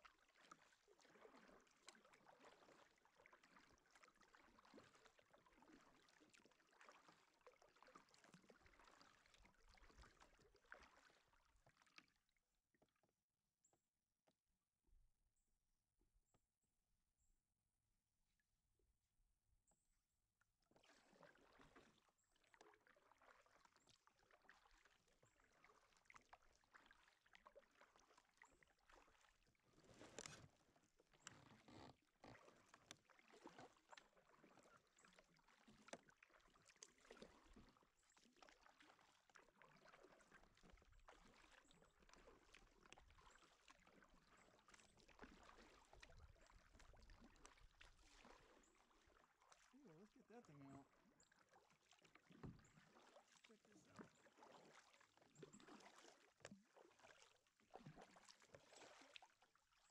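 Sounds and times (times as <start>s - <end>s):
kayak paddle splashing in water: 0.0s - 12.3s, 20.6s - 59.9s.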